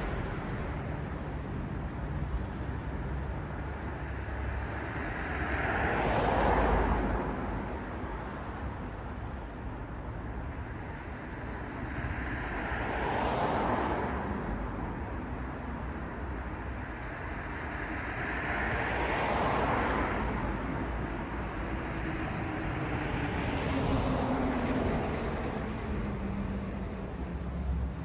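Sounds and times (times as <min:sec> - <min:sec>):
cars passing: 0:17.3 - 0:28.0.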